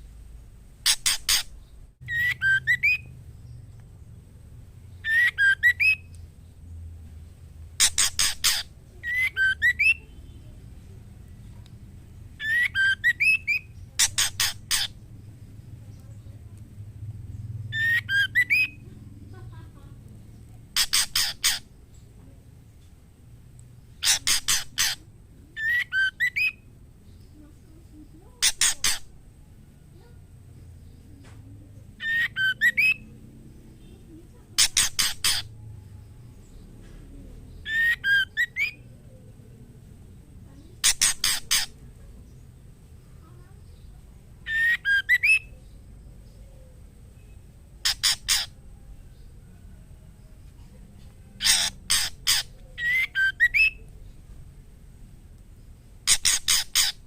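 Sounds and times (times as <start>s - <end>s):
bird harsh loud notes: 0.8s - 3.1s
harsh bird notes: 0.8s - 3.2s, 4.9s - 6.1s, 7.8s - 10.5s, 12.4s - 15.1s, 17.4s - 18.8s, 20.6s - 21.7s, 44.5s - 45.5s, 51.4s - 53.9s
bird whistled call: 2.1s - 3.1s, 5.0s - 6.1s, 8.0s - 10.0s, 12.4s - 13.7s, 17.7s - 18.8s, 25.6s - 26.6s, 32.0s - 33.1s, 37.6s - 38.8s, 44.5s - 45.5s, 51.4s - 53.8s.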